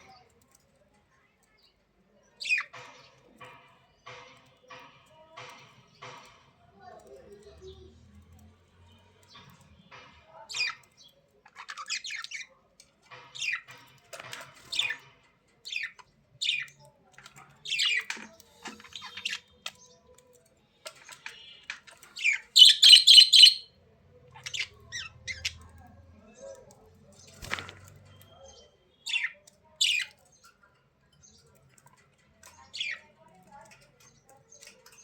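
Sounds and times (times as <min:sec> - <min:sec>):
budgerigars chirping and squawking: 0:02.4 - 0:03.0, 0:10.5 - 0:12.5, 0:14.6 - 0:15.1, 0:17.6 - 0:19.9, 0:20.9 - 0:23.7, 0:24.3 - 0:25.7, 0:29.0 - 0:30.2.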